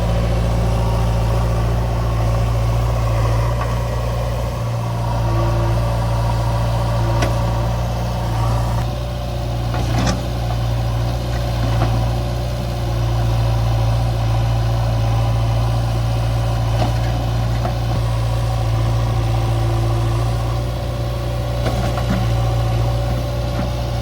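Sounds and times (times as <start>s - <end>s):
diesel engine droning: 0.0s - 24.0s.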